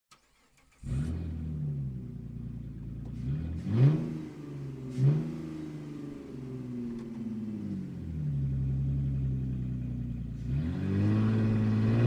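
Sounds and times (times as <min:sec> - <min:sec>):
car engine revving: 0:00.3 - 0:12.0.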